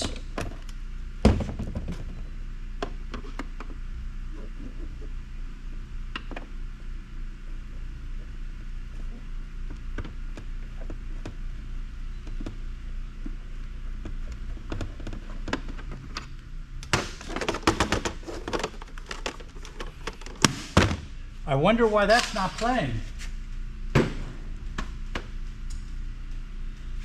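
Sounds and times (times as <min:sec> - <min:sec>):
knocks and clatter of case: 0:00.0 - 0:05.1, 0:13.2 - 0:21.0
steady low hum: 0:00.0 - 0:27.0.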